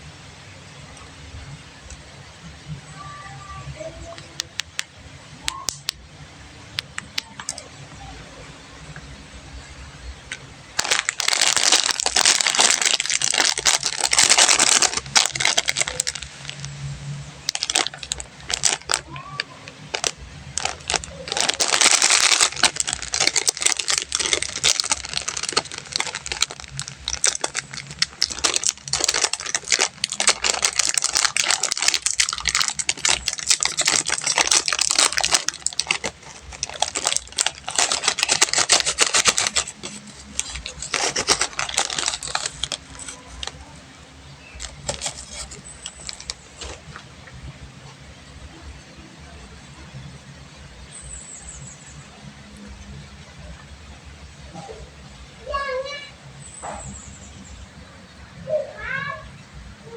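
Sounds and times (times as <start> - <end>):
candy wrappers crinkling: 3.8 - 6.0, 6.7 - 7.8, 10.2 - 48.5.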